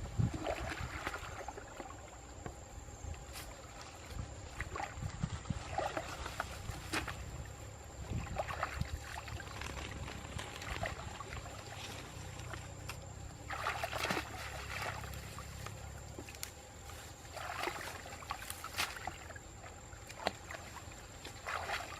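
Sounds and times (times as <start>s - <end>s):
water splashing and sloshing: 0.0s - 21.9s.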